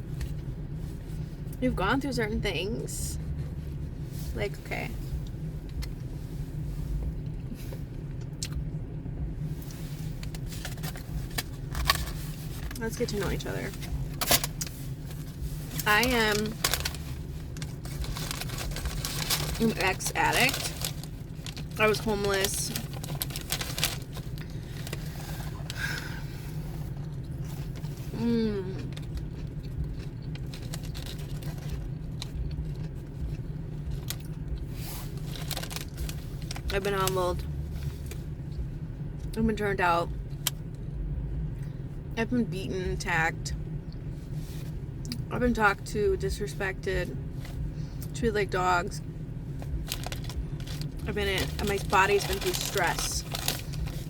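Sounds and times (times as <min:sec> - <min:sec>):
steady low hum: 0:00.0 - 0:54.0
steady low rumble: 0:00.0 - 0:54.0.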